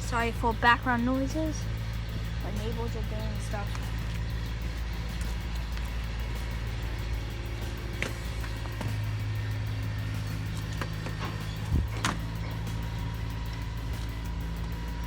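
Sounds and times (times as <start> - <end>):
engine droning: 0.0 - 15.0.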